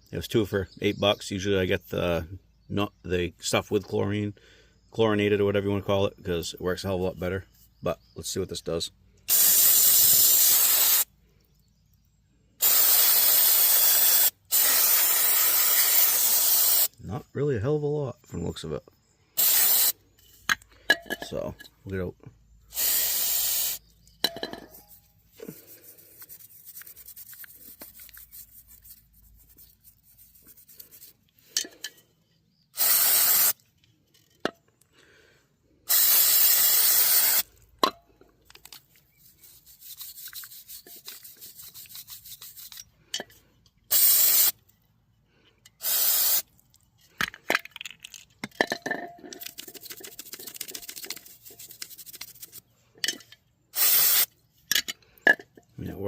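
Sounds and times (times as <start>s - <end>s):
aerosol spray hissing: 9.3s - 11.1s, 12.6s - 16.9s, 19.4s - 20.0s, 22.7s - 23.8s, 32.8s - 33.6s, 35.9s - 37.4s, 43.9s - 44.5s, 45.8s - 46.4s, 53.8s - 54.3s
rubbing: 24.8s - 31.4s, 39.0s - 42.9s, 49.4s - 52.7s.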